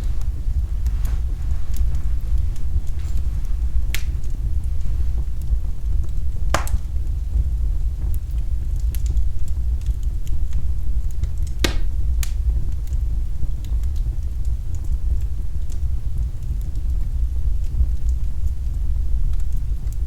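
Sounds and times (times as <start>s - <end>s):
fire popping sharply: 0.0s - 7.2s, 11.6s - 12.0s
fire crackling in fireplace: 0.0s - 20.0s.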